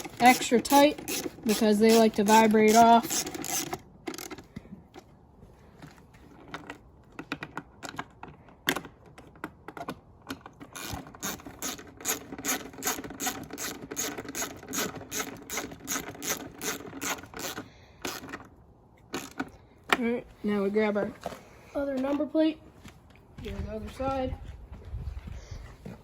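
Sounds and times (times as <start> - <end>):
hand ratchet clicking: 0.0 - 4.4, 10.7 - 18.4.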